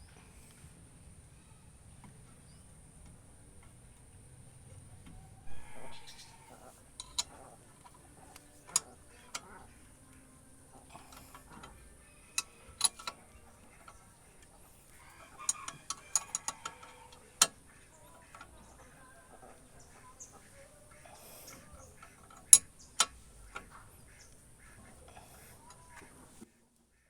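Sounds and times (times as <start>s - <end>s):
metal clicks and knocks: 5.9s - 26.1s.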